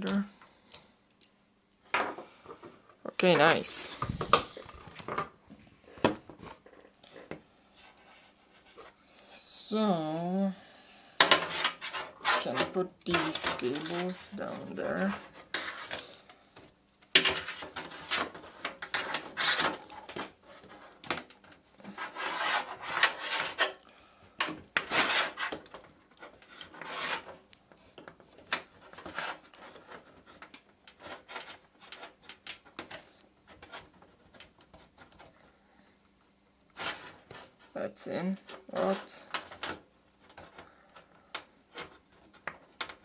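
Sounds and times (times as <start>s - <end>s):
cables scraping in computer case: 17.2s - 21.1s, 21.8s - 23.8s, 24.8s - 27.5s, 28.3s - 35.2s, 36.7s - 37.7s.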